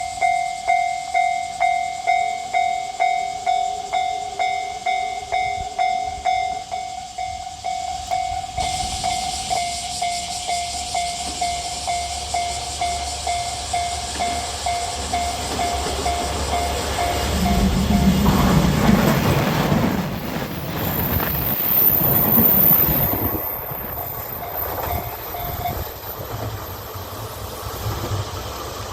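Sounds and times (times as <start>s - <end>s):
steady low tone: 0.0s - 19.1s
crossing warning bell dinging: 0.0s - 26.9s
train rushing hiss: 0.0s - 28.9s.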